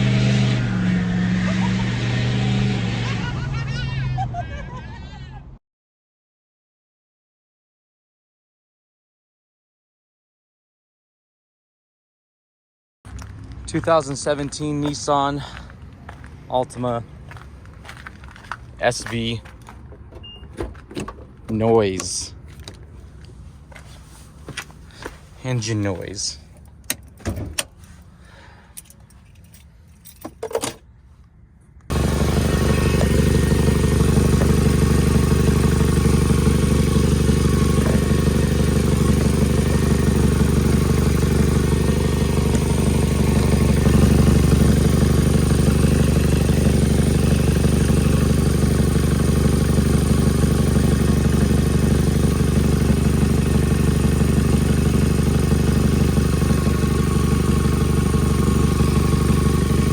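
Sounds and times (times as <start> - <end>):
car engine running loudly: 0.0 - 4.2, 31.9 - 59.9.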